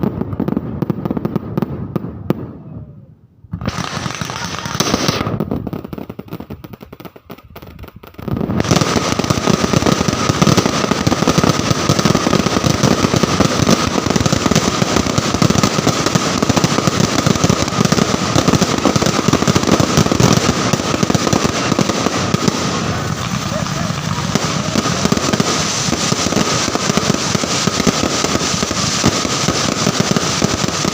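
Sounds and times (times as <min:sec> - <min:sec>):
fireworks crackling and banging: 0:00.0 - 0:02.8, 0:03.5 - 0:30.9.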